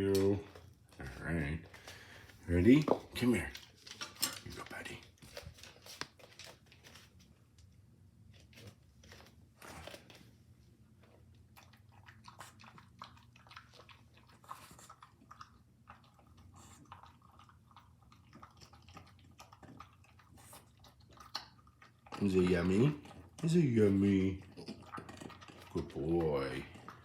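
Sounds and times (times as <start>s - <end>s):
dog chewing and smacking: 8.4s - 27.0s.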